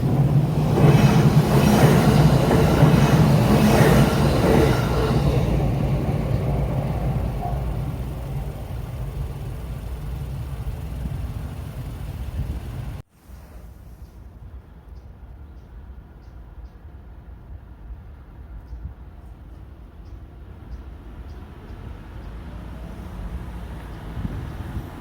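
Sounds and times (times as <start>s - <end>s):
train rumbling past: 0.0s - 14.1s, 21.0s - 25.0s.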